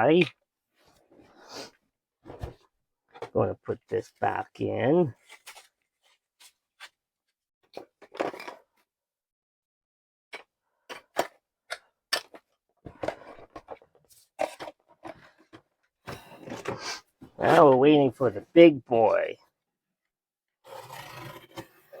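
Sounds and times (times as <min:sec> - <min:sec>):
plastic parts clicking and knocking: 0:10.4 - 0:15.7.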